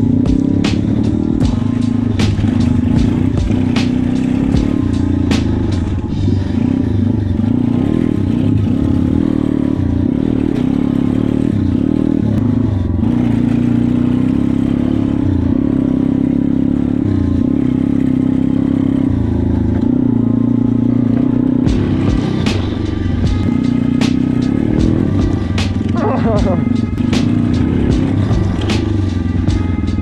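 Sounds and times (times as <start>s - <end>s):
motorbike engine revving: 0.0s - 30.0s.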